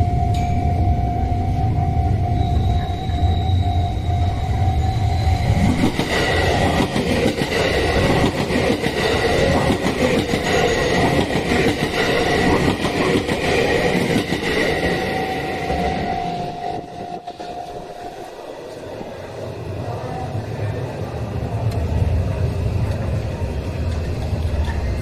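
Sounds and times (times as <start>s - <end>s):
level crossing warning bell: 0.0s - 19.3s
train wheels clattering on rails: 5.4s - 19.2s.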